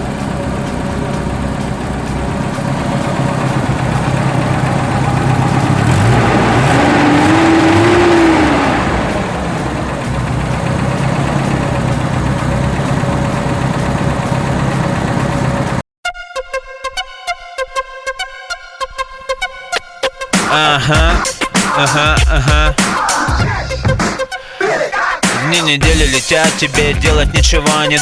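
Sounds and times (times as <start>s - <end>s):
car engine running: 0.0s - 15.8s, 25.2s - 28.0s.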